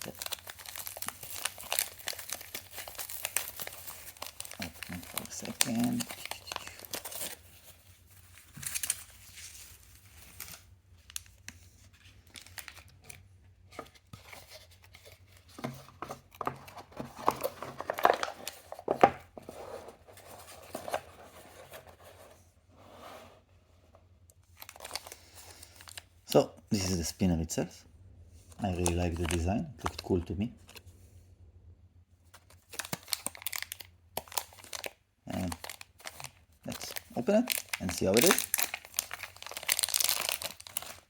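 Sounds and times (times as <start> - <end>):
packaging crinkling and tearing: 0.0 - 19.5, 24.4 - 26.1, 28.6 - 30.8, 32.3 - 41.0.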